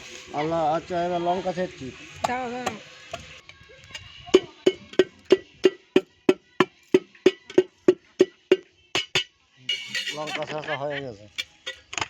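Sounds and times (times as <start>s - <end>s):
chillies being pounded: 4.4s - 10.3s.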